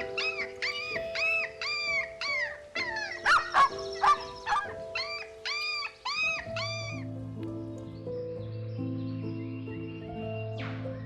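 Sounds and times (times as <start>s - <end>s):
dog yelping: 0.0s - 7.0s
dog barking: 3.2s - 5.2s.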